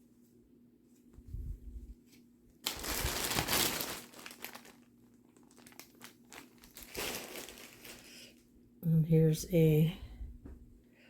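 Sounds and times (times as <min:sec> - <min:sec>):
craft materials rustling: 0:02.6 - 0:08.3.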